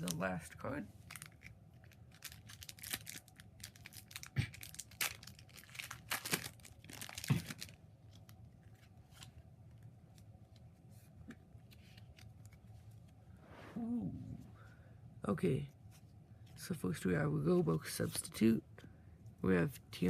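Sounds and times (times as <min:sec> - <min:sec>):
foil wrapper tearing and crinkling: 0:01.1 - 0:08.4.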